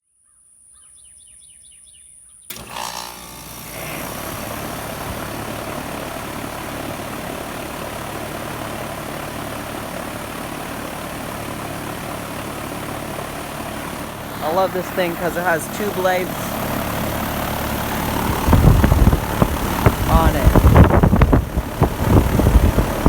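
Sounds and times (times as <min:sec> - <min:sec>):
faint birds chirping: 0:00.2 - 0:02.6
air conditioner compressor and fan: 0:02.5 - 0:23.0.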